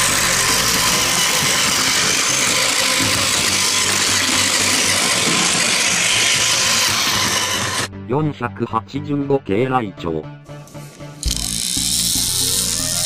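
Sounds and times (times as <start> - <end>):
toy train motor whirring: 0.0 - 7.9, 11.2 - 13.0
toy train wheels rattling: 0.0 - 7.9, 11.2 - 13.0.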